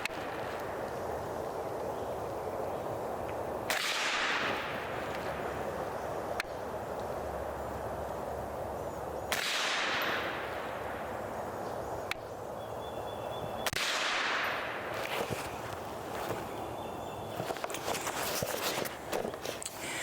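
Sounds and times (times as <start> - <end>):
rifle shots with echo: 9.3 - 10.7.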